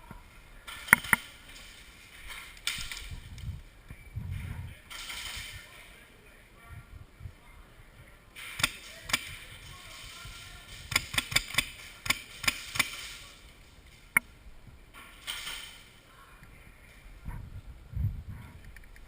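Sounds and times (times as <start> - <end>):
airsoft guns firing: 8.4 - 13.4.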